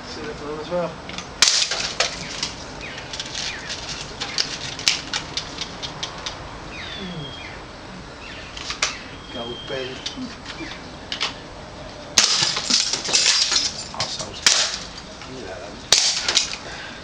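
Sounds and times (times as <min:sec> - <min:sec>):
birds chirping: 0:00.0 - 0:17.0
sharp crack: 0:01.1 - 0:06.4, 0:08.5 - 0:09.1, 0:12.1 - 0:16.8.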